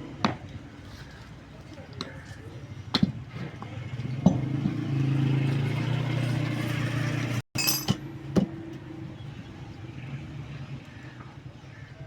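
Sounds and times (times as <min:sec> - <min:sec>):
sharp metallic clinks: 0:07.6 - 0:08.0.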